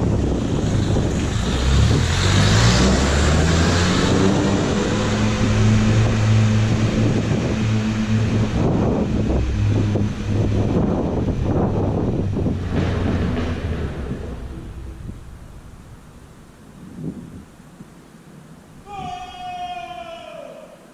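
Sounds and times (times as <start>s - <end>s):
deep air horn chord: 4.2s - 15.8s.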